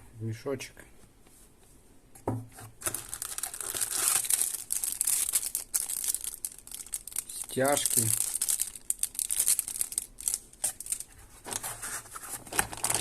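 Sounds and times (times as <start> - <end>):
plastic packaging crinkling: 2.8 - 13.0.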